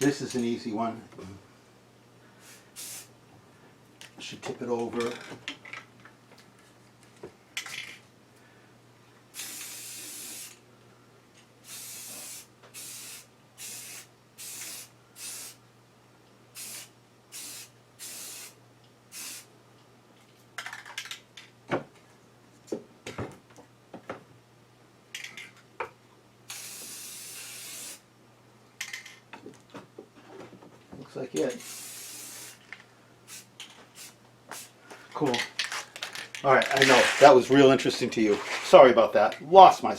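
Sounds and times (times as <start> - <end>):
spray paint hissing bursts: 2.4 - 3.1, 9.4 - 10.6, 11.6 - 15.6, 16.6 - 19.5, 26.5 - 28.0, 31.6 - 32.6, 33.3 - 34.8.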